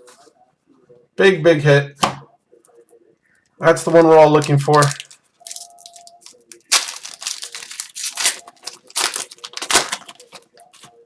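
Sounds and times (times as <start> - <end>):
card pack wrappers crinkling: 4.2 - 11.0.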